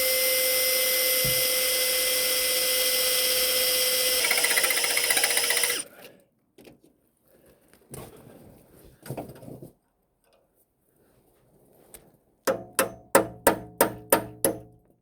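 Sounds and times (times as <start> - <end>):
power tool motor whine: 0.0 - 5.8.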